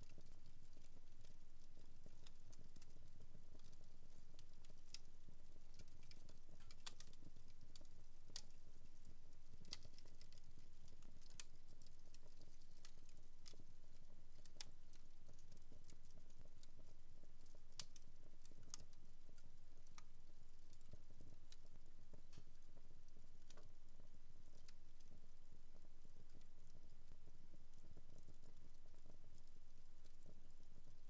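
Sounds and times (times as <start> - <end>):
wood fire crackling and popping: 5.8 - 13.6, 17.4 - 18.9.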